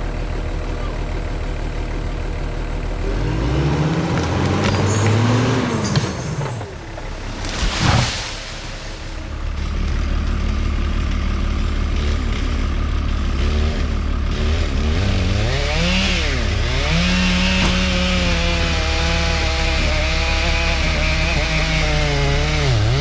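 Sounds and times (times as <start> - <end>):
low engine hum: 0.0 - 23.0
chainsaw revving: 3.0 - 9.2, 13.3 - 23.0.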